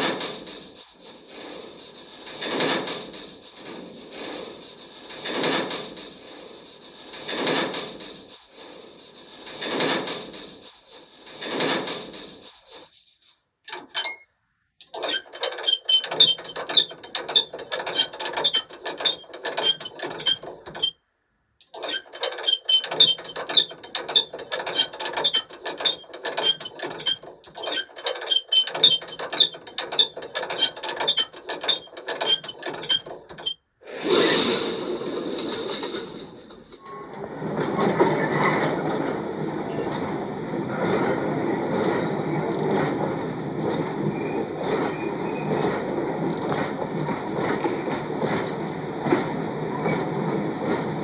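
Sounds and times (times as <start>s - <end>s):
rushing noise: 34.0s - 36.8s.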